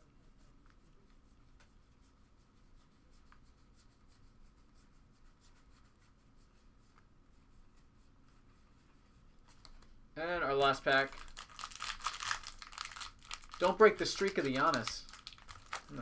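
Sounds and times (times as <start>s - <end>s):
low room hum: 0.0s - 16.0s
trading cards being flipped: 11.1s - 16.0s.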